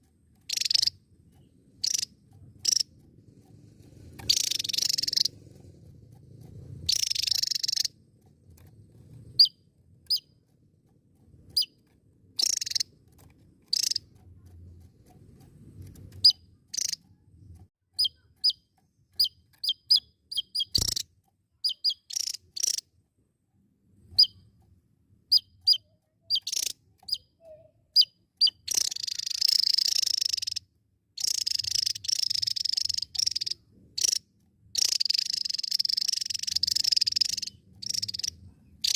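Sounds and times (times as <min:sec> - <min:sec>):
bird high chirps: 0:00.4 - 0:02.9, 0:04.2 - 0:05.4, 0:06.9 - 0:08.0, 0:09.3 - 0:10.4, 0:12.4 - 0:12.9, 0:13.7 - 0:14.1, 0:16.1 - 0:17.0, 0:18.0 - 0:22.8, 0:24.1 - 0:24.5, 0:25.3 - 0:30.6, 0:31.2 - 0:34.2, 0:34.8 - 0:38.9
bird harsh buzzing: 0:01.8 - 0:02.8, 0:04.2 - 0:05.4, 0:06.9 - 0:07.9, 0:12.4 - 0:12.9, 0:13.7 - 0:14.0, 0:21.6 - 0:22.8, 0:31.2 - 0:34.2, 0:34.8 - 0:38.9
sharp click: 0:06.1 - 0:22.9.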